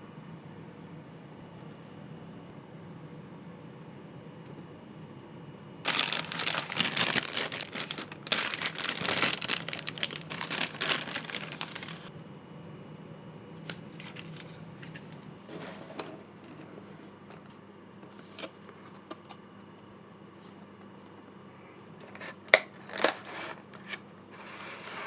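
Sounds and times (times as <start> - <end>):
plastic packaging crinkling: 5.9 - 12.1, 13.7 - 14.5.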